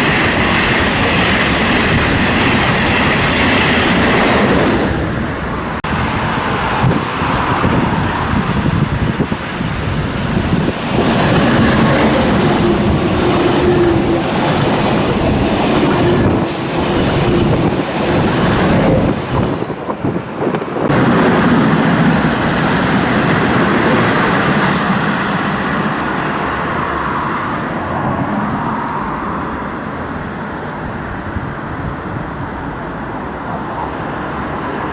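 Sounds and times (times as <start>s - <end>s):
train passing at speed: 0.0s - 34.9s.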